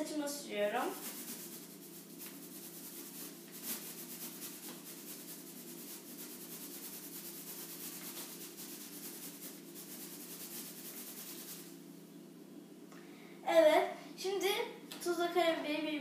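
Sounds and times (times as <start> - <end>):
balloon rubbing against hair: 0.7 - 11.8.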